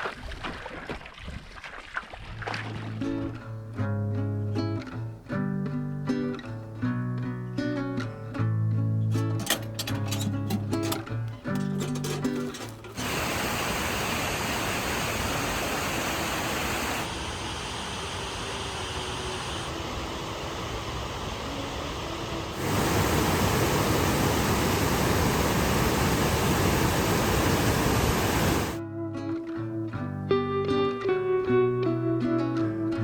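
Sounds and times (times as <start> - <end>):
rushing water: 13.0 - 20.3, 21.9 - 28.8.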